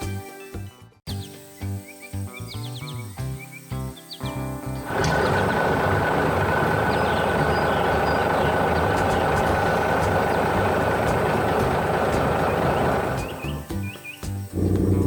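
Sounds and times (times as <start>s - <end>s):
heavy machine engine rumbling: 4.8s - 13.7s, 14.6s - 15.0s.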